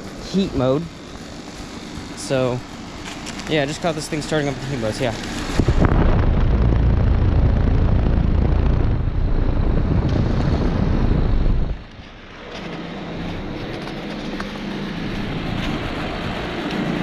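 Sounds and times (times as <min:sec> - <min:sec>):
faint steady hum: 0:00.0 - 0:17.0
heat pump running: 0:00.0 - 0:17.0.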